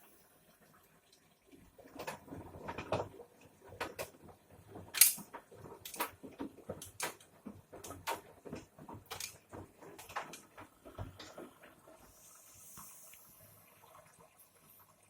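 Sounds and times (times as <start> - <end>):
washing machine clattering: 1.6 - 12.0.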